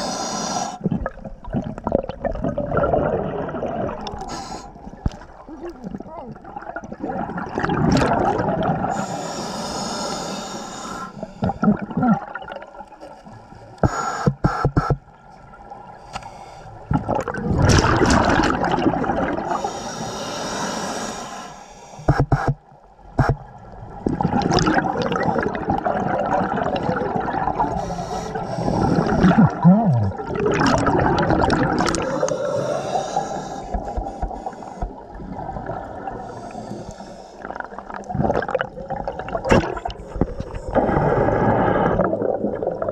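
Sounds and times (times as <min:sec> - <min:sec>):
gurgling exhaust bubbles: 0:28.9 - 0:32.2.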